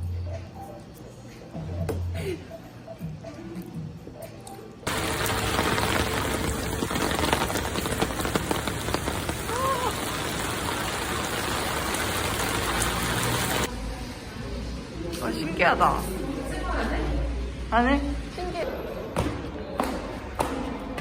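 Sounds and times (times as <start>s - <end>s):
heavy rain pouring: 4.9s - 13.7s.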